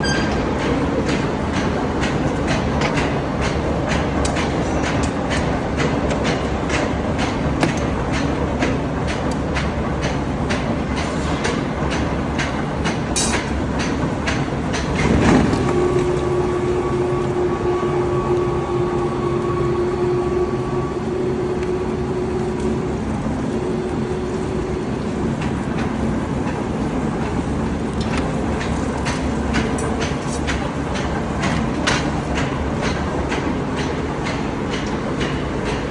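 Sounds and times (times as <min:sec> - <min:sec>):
air hammer striking: 0:13.2 - 0:14.0.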